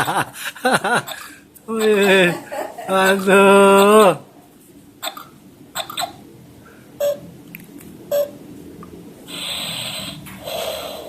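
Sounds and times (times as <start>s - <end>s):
toy doll snoring: 9.3s - 11.0s.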